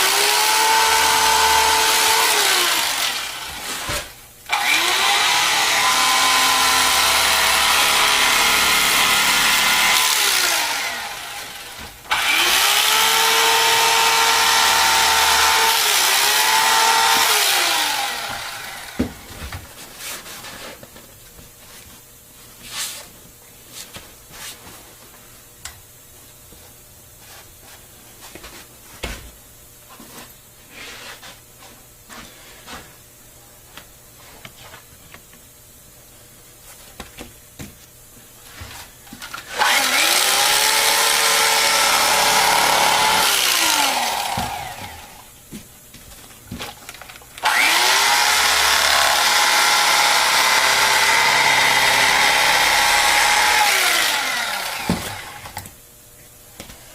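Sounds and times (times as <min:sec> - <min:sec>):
handheld power tool running: 0:00.0 - 0:19.1, 0:39.3 - 0:45.3, 0:47.4 - 0:55.6.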